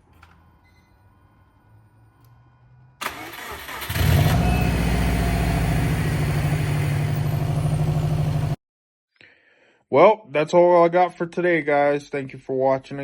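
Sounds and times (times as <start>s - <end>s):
car engine cranking and starting: 3.0s - 8.6s.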